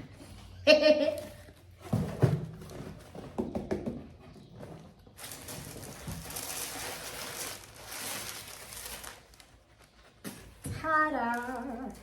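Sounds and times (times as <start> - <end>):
gift packaging crinkling: 5.2 - 10.0.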